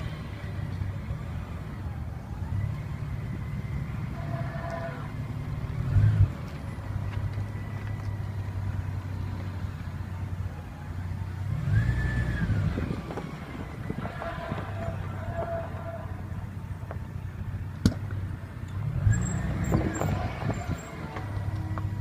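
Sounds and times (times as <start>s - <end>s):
car engine humming: 0.0s - 22.0s
short high squeaks: 19.1s - 21.0s.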